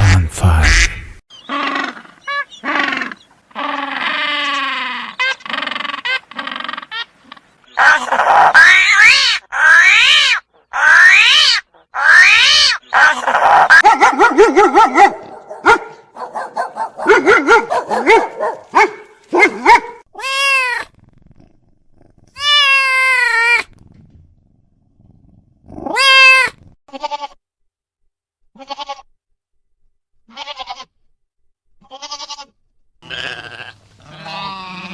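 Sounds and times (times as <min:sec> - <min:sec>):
animal calls and cries: 0:01.3 - 0:20.0.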